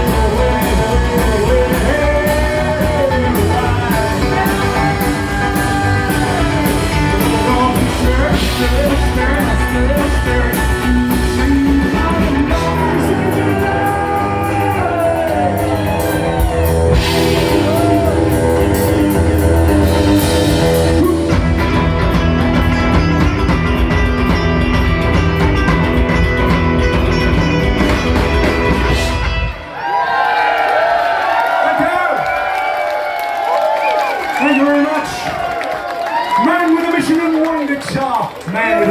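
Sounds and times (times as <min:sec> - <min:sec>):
electric guitar lead bending notes: 0:00.0 - 0:29.7
live rockabilly band playing: 0:00.0 - 0:29.8.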